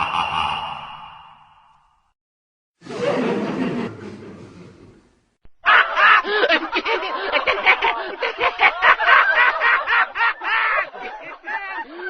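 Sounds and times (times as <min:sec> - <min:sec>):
high-pitched laughing: 0:00.0 - 0:01.5.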